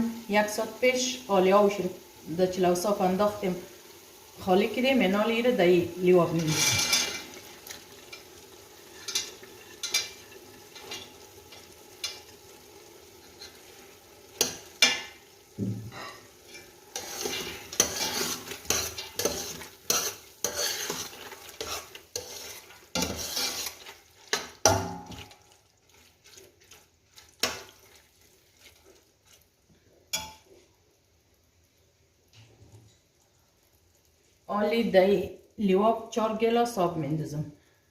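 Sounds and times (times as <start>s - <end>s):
low sizzle: 0.0s - 37.9s
spoon scraping and knocking pot: 6.4s - 7.3s, 15.9s - 25.3s.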